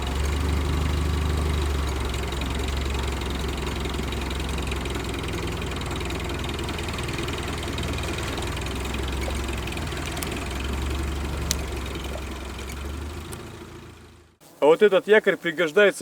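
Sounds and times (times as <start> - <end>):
engine running with low drone: 0.0 - 14.4
faint ticks: 7.2 - 13.6.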